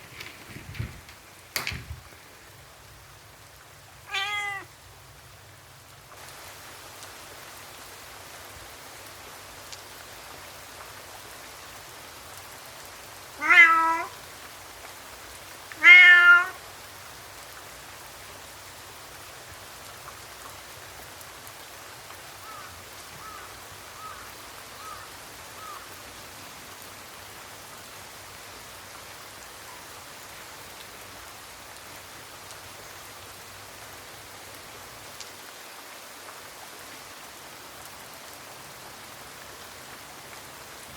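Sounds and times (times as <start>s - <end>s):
steady rain falling: 0.0s - 40.9s
cat meowing loudly: 4.1s - 4.7s, 13.4s - 14.2s, 15.7s - 16.6s.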